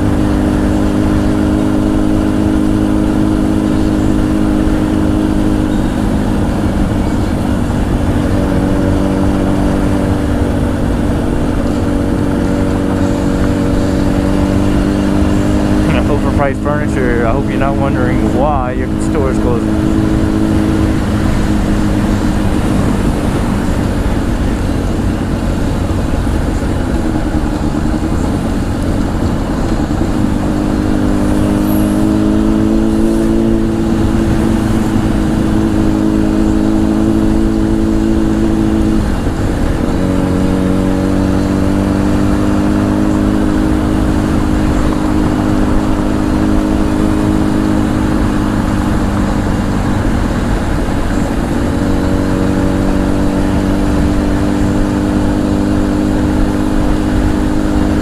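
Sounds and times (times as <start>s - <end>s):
low wind rumble: 0.0s - 58.0s
motorcycle engine cruising: 0.0s - 58.0s.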